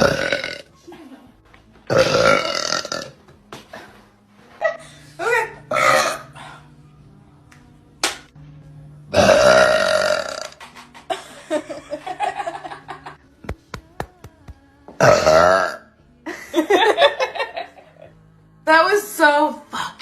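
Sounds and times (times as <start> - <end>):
women burping loudly: 0.0 - 0.8, 1.9 - 3.2, 5.7 - 6.4, 9.1 - 10.6, 15.0 - 16.0.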